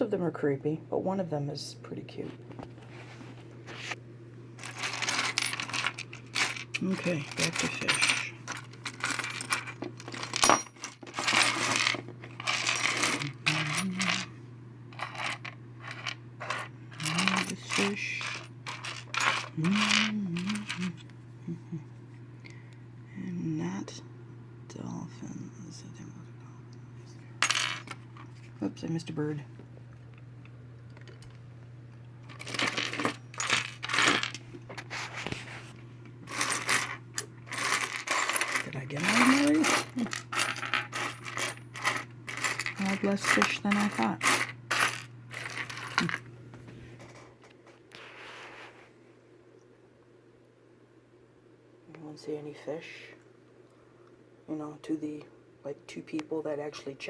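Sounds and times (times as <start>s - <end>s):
figurines clinking on a table: 4.6s - 14.3s, 27.4s - 28.4s, 36.2s - 46.3s.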